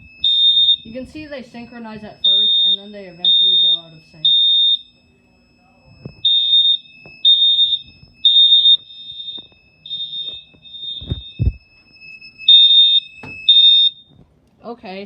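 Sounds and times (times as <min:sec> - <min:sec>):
fire alarm horn beeps: 0:00.0 - 0:14.2
low thumps: 0:10.0 - 0:11.7.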